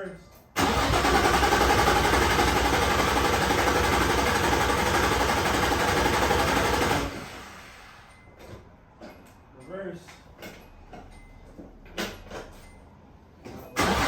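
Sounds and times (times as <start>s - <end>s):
car engine cranking on starter: 0.6s - 7.9s, 13.8s - 14.0s.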